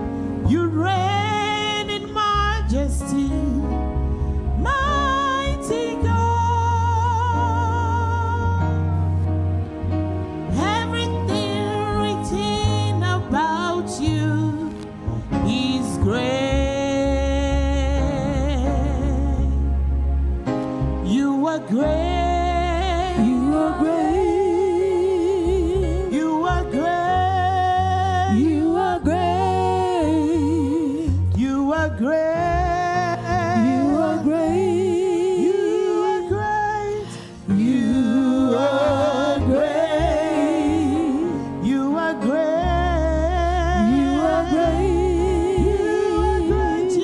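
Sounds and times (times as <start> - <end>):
gospel singing with vibrato: 0.0 - 47.0
low bass line: 0.0 - 47.0.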